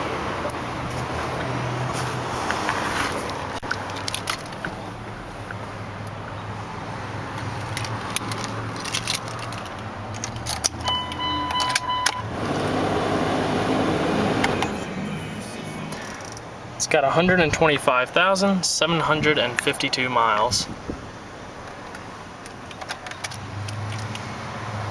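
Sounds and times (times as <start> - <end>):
keys jingling and switch clicks: 7.6 - 12.2
diesel engine idling: 10.9 - 17.2.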